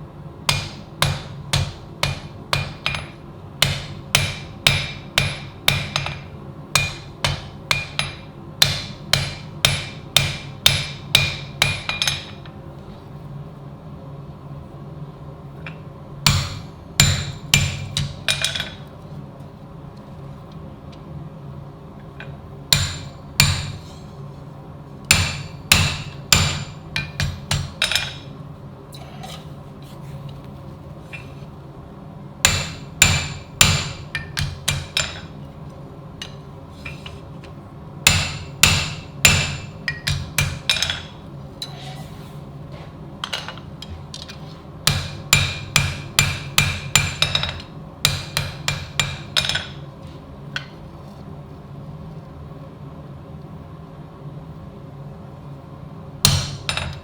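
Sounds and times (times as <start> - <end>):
steady low hum: 0.0 - 57.0
hammer striking steel on anvil: 0.5 - 12.5, 16.3 - 18.8, 22.7 - 23.9, 25.1 - 28.3, 32.4 - 35.4, 38.1 - 41.2, 44.9 - 49.8, 56.2 - 57.0.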